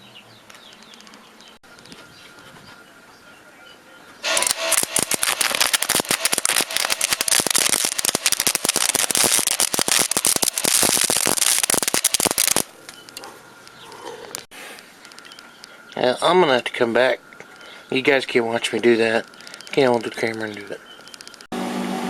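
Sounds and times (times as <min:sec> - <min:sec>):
welding arc crackling: 0:04.2 - 0:13.2, 0:17.5 - 0:21.5.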